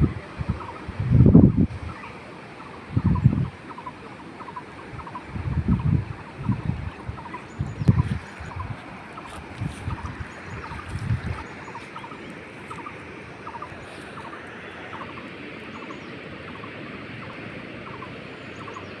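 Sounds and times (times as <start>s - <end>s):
outdoor hiss: 6.1s - 19.0s.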